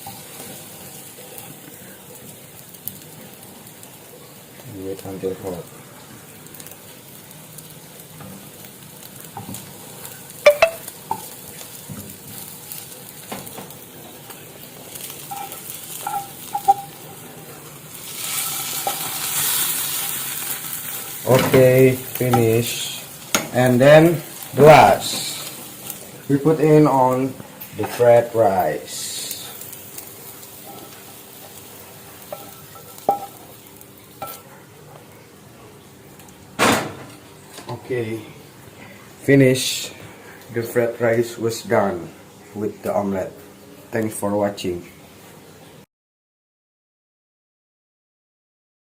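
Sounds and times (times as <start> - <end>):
food sizzling in a frying pan: 0.0 - 45.9
metal utensil clinking on pan: 32.3 - 33.4.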